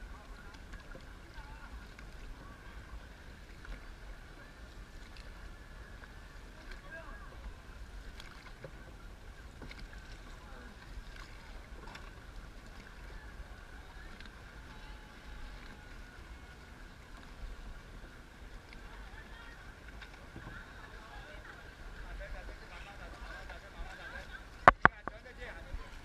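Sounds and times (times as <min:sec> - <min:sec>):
water noise: 0:00.0 - 0:26.0
knocks and splashes: 0:24.6 - 0:25.2.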